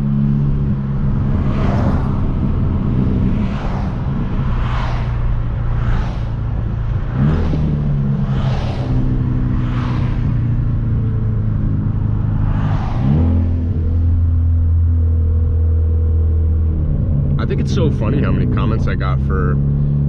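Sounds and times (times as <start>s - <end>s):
rushing wind noise: 0.0s - 14.2s
car engine driving: 0.0s - 20.0s.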